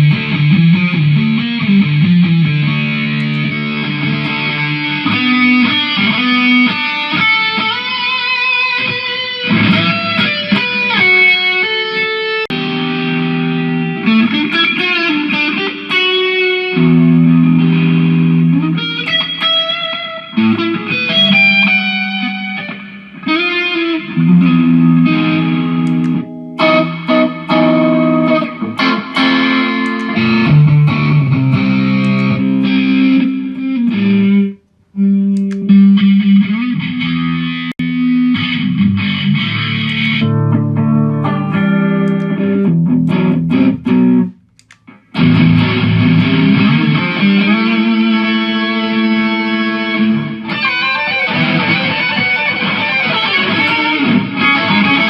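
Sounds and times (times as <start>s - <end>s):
electric guitar riffs: 0.0s - 55.0s.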